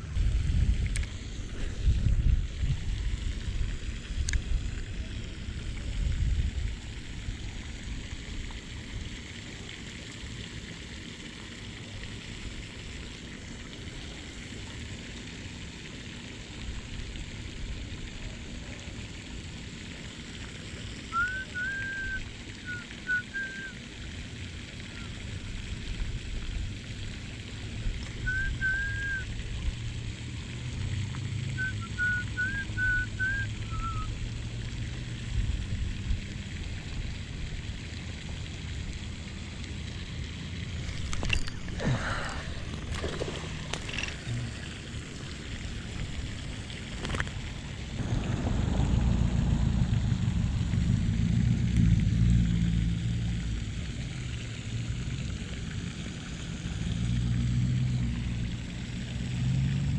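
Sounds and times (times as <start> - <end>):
high whistled chirps: 21.1 - 23.8, 28.2 - 29.3, 31.6 - 34.1
low rumble: 40.6 - 55.9.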